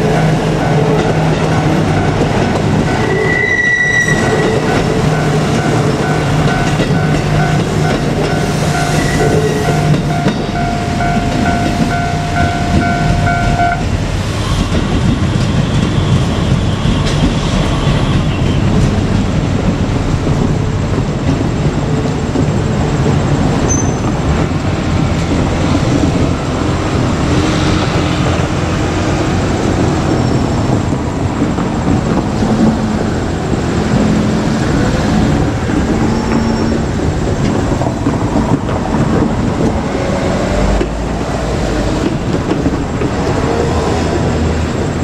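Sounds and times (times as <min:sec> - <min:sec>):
diesel railcar engine drone: 0:00.0 - 0:45.0.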